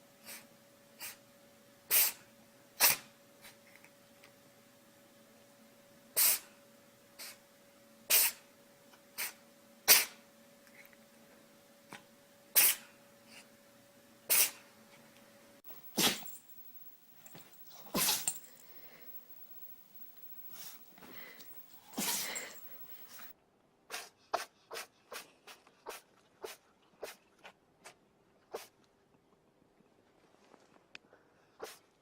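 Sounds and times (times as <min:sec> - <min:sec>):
faint steady hum: 0:00.0 - 0:23.3
pet sneezing: 0:01.9 - 0:02.2, 0:02.8 - 0:03.6, 0:06.2 - 0:06.5, 0:08.1 - 0:08.4, 0:09.2 - 0:10.2, 0:12.5 - 0:12.9, 0:14.3 - 0:14.6, 0:15.7 - 0:23.3, 0:23.9 - 0:27.2, 0:28.5 - 0:28.7, 0:31.6 - 0:31.9.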